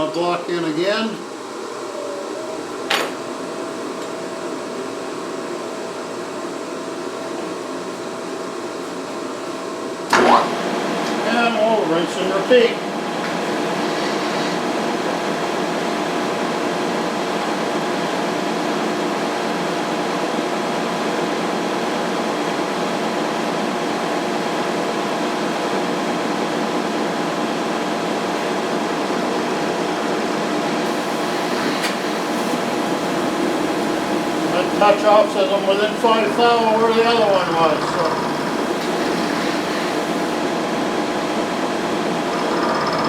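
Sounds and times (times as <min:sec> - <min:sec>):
shop machinery humming: 0:00.9 - 0:07.6, 0:10.0 - 0:15.6, 0:30.8 - 0:40.9
steady held tones: 0:30.9 - 0:40.4.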